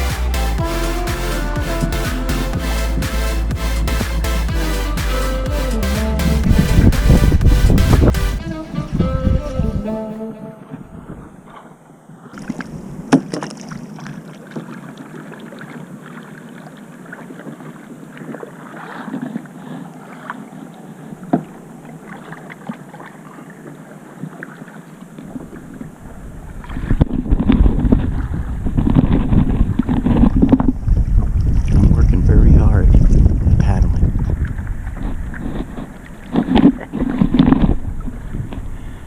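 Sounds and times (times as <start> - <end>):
wind buffeting microphone: 6.4 - 10.0, 25.4 - 39.0
paddles splashing: 11.4 - 30.4.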